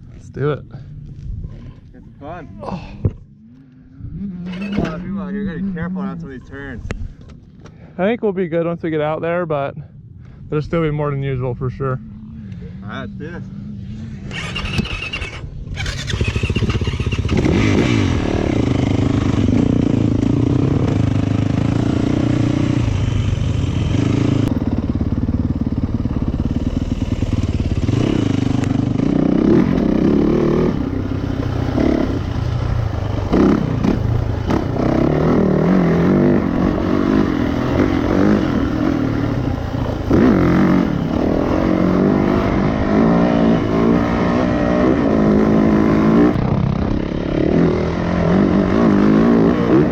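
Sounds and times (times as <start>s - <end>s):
motorcycle engine revving: 3.4s - 6.4s, 13.4s - 49.9s.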